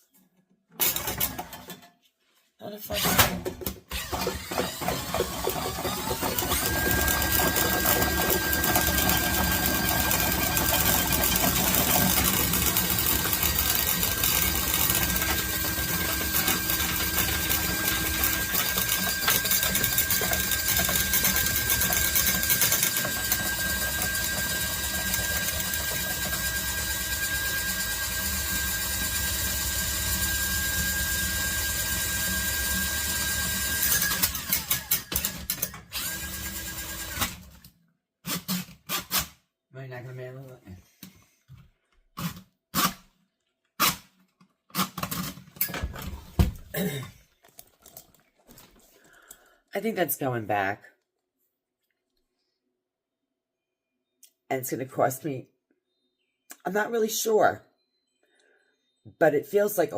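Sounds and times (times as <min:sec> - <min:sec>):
drain auger motor whining: 0:03.1 - 0:37.4.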